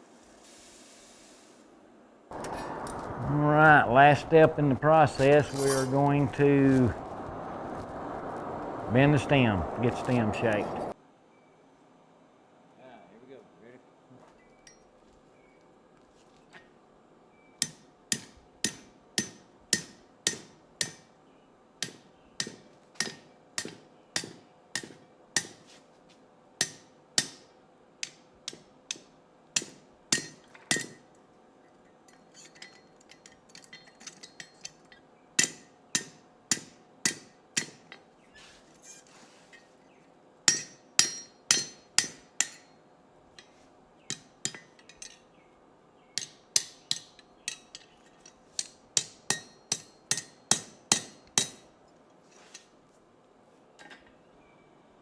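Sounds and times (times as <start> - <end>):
hammer striking hot steel on anvil: 17.6 - 21.1, 21.8 - 25.6, 26.6 - 31.0, 35.4 - 38.0, 40.5 - 42.8, 44.1 - 45.2, 46.2 - 47.8, 48.6 - 51.7
anvil ringing: 40.5 - 42.7.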